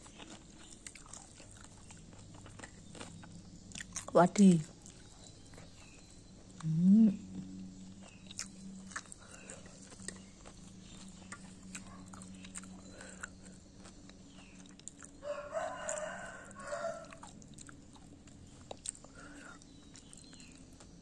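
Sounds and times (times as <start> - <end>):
low hum: 0.0 - 15.3
rooster crowing: 15.2 - 17.4.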